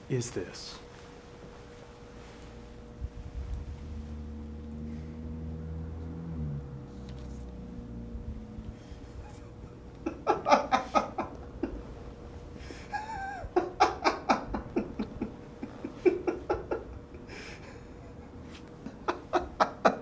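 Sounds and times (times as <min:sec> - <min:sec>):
person laughing: 0:08.8 - 0:20.0.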